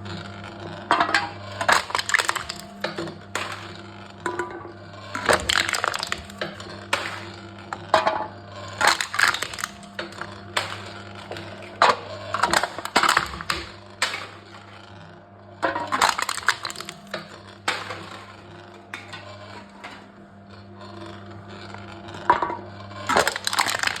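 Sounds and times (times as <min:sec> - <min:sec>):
cans being crushed: 0:01.6 - 0:03.7, 0:05.1 - 0:07.3, 0:08.8 - 0:11.0, 0:12.4 - 0:14.3, 0:15.8 - 0:18.1, 0:23.1 - 0:24.0.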